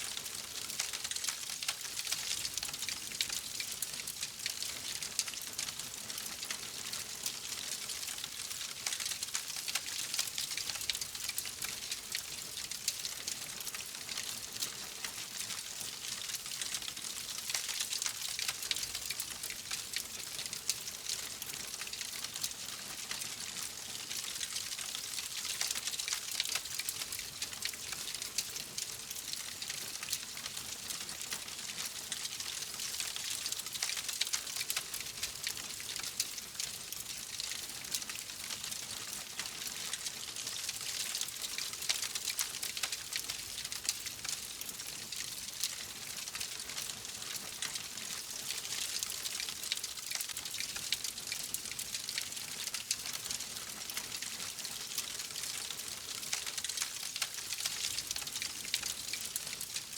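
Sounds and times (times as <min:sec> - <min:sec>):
wood fire crackling: 0:32.0 - 0:38.1, 0:40.7 - 0:46.0, 0:46.6 - 0:50.7, 0:54.9 - 0:59.4.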